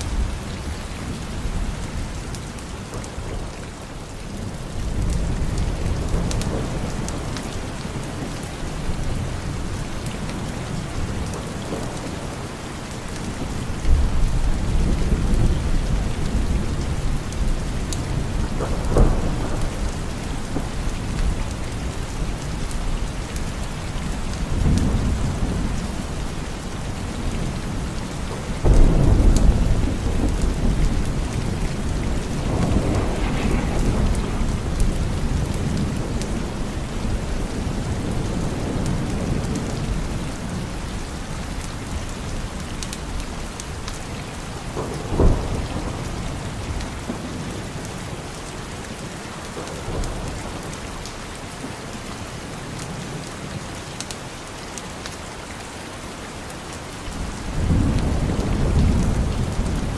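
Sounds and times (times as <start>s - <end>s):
steady rain: 0.0s - 59.9s
thunder: 4.5s - 12.6s, 13.3s - 23.0s, 24.0s - 41.0s, 44.5s - 50.9s, 57.2s - 59.9s.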